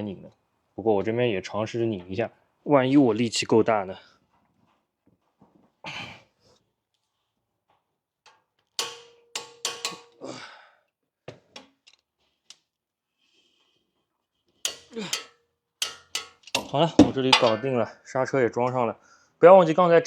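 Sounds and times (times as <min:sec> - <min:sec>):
hand tools clanking on metal: 0:08.3 - 0:10.4, 0:14.6 - 0:17.8
wrench and socket clicking: 0:14.7 - 0:16.8.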